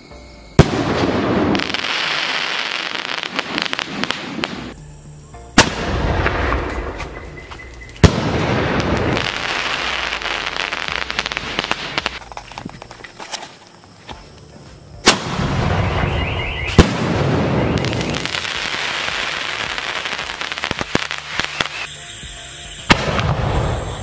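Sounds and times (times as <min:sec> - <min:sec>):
firework bangs: 0:00.6 - 0:04.7, 0:05.6 - 0:07.2, 0:08.0 - 0:12.2, 0:15.0 - 0:21.9, 0:22.9 - 0:24.0
fireworks crackling: 0:00.6 - 0:04.8, 0:05.6 - 0:13.9, 0:15.0 - 0:24.0.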